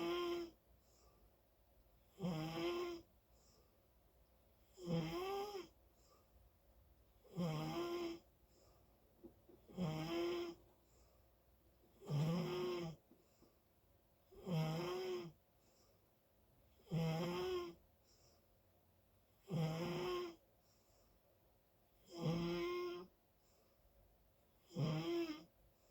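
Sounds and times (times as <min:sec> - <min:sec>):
loud snoring: 0:00.0 - 0:00.6, 0:02.1 - 0:03.1, 0:04.8 - 0:05.7, 0:07.3 - 0:08.2, 0:09.7 - 0:10.6, 0:12.0 - 0:13.0, 0:14.4 - 0:15.4, 0:16.8 - 0:17.8, 0:19.4 - 0:20.4, 0:22.1 - 0:23.1, 0:24.7 - 0:25.5.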